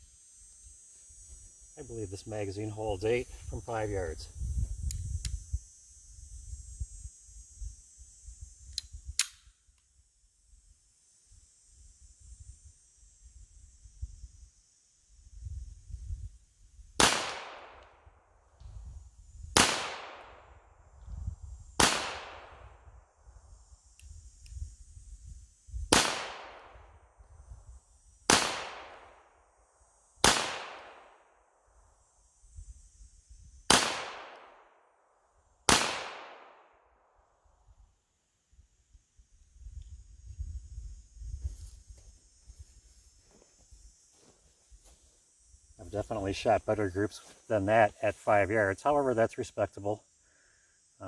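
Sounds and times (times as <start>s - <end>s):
faint click: 8.7s - 9.9s
pistol shots: 30.2s - 31.0s, 35.7s - 36.6s.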